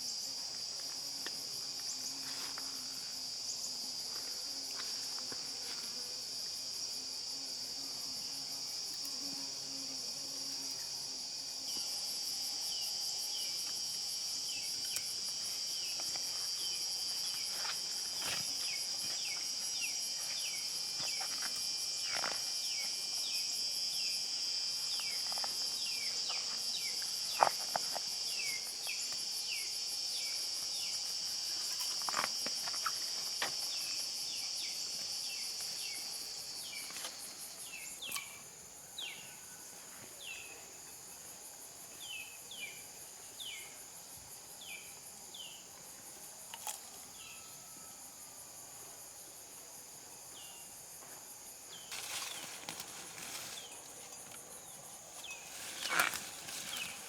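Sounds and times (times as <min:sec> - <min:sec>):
high pulsing insect buzz: 0:00.0 - 0:57.0
sharp insect clicks: 0:14.6 - 0:15.4, 0:38.0 - 0:38.4.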